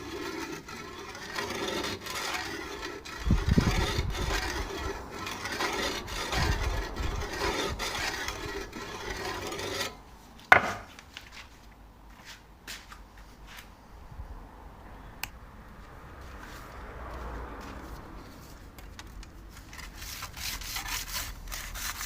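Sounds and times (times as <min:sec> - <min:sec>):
hand tool rasping on wood: 0:00.0 - 0:10.0, 0:19.8 - 0:22.0
sharp knock: 0:10.5 - 0:10.9.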